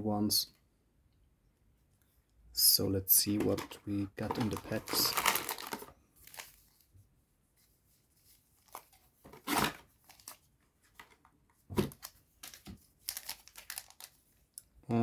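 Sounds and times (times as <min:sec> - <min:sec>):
foil wrappers rustling: 0:03.4 - 0:06.8, 0:11.8 - 0:14.3.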